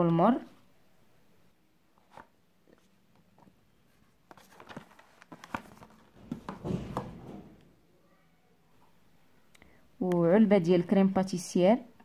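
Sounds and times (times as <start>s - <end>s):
packets being handled: 4.3s - 7.2s.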